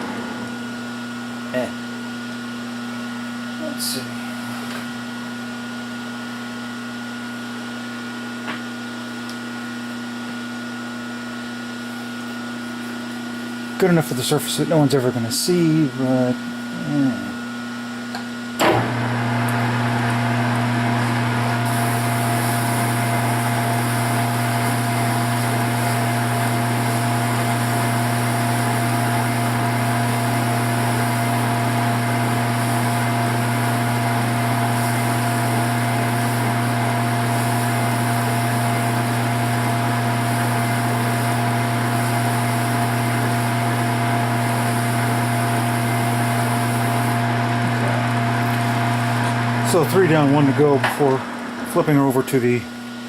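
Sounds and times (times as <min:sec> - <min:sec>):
metal lathe humming with whine: 0:18.8 - 0:51.7.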